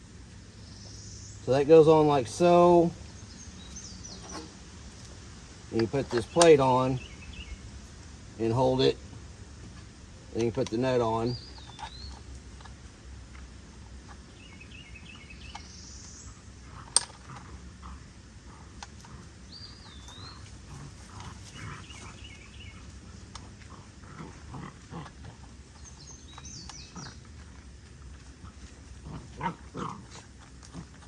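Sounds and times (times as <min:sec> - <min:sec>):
high chirping calls: 0:00.6 - 0:04.7
puppies grunting and growling: 0:16.2 - 0:31.0.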